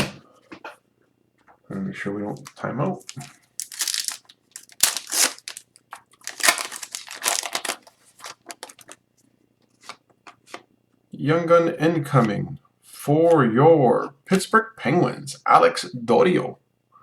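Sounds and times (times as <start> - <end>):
card pack wrapper crinkling and tearing: 2.4 - 9.0.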